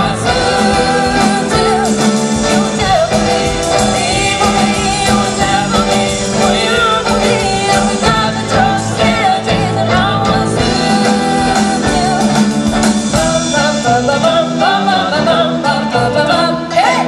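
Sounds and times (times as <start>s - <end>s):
lead vocal singing: 0.0s - 17.0s
live pop-rock band: 0.0s - 17.0s.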